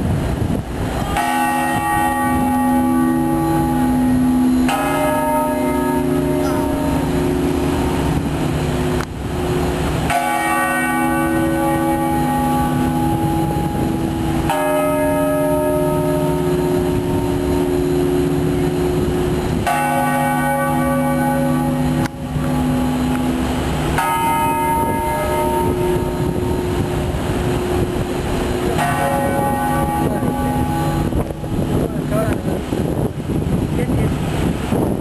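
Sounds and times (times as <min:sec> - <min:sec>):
low street noise: 0:00.0 - 0:35.0
large bell tolling: 0:01.0 - 0:33.5.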